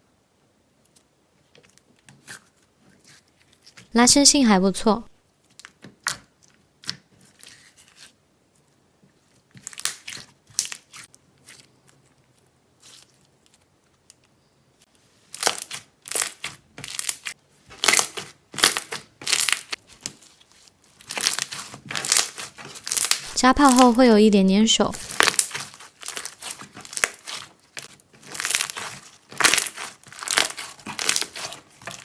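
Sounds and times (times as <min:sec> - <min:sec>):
slime crackling and popping: 0:09.5 - 0:11.6, 0:15.3 - 0:24.1, 0:24.9 - 0:32.0.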